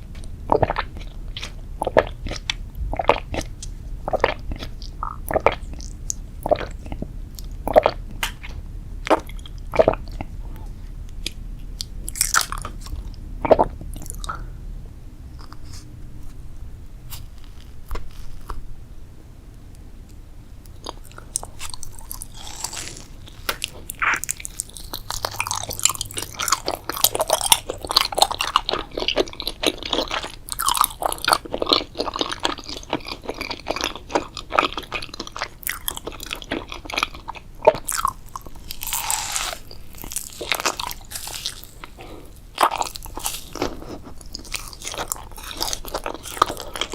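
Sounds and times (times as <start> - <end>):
crunchy chewing: 0.5 - 14.5, 17.1 - 18.6, 20.6 - 46.9.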